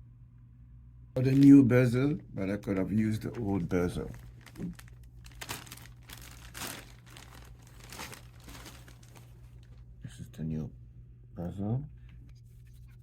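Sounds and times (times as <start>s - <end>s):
steady low hum: 0.0s - 13.0s
plastic wrapping crinkling: 1.2s - 1.7s, 2.6s - 9.9s.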